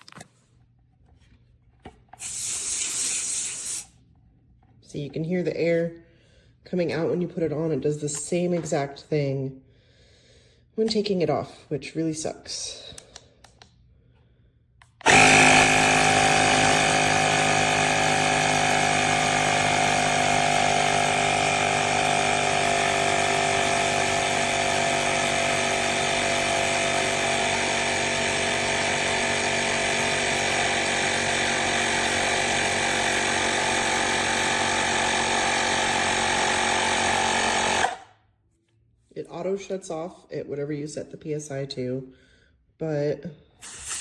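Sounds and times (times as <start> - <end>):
small electric compressor running: 2.2 - 3.9, 15.0 - 38.1, 43.6 - 44.0.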